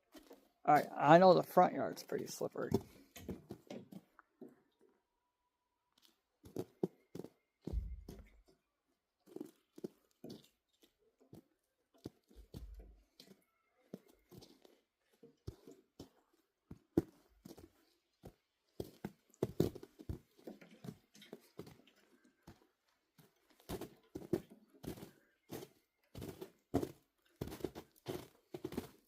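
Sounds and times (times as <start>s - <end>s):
footsteps crunching on frozen ground: 23.2s - 29.0s.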